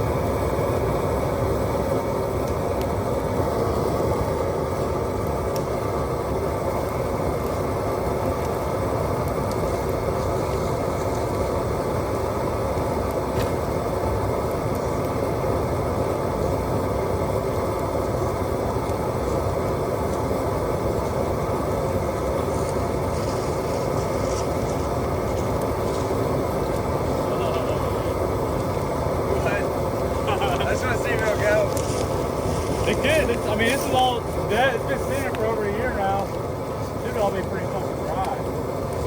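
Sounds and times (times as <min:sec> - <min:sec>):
bonfire rumbling: 0:00.0 - 0:39.0
dry brush crackling: 0:22.5 - 0:27.4, 0:30.3 - 0:39.0.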